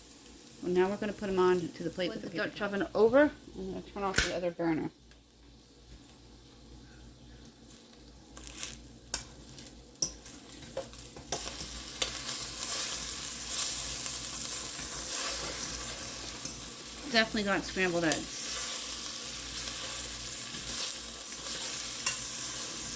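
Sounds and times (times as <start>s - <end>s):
food sizzling in a pot: 0.0s - 22.9s
utensil scraping a pot: 11.3s - 16.7s.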